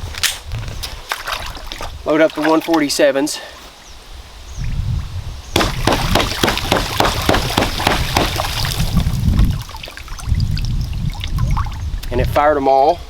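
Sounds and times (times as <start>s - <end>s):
water sloshing and rumbling: 0.5s - 2.9s, 5.6s - 12.5s
underwater gunshots: 5.6s - 8.9s.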